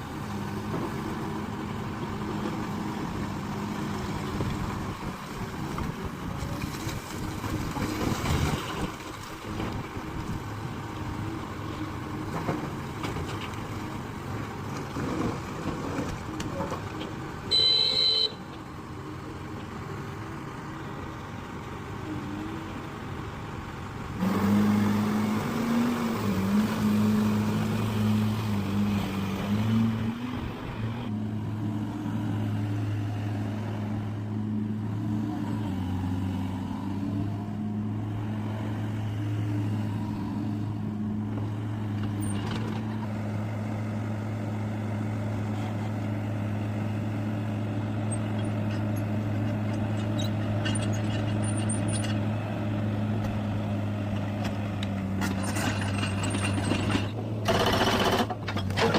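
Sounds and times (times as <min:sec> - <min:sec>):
diesel engine of heavy machinery: 0:00.0 - 0:58.9.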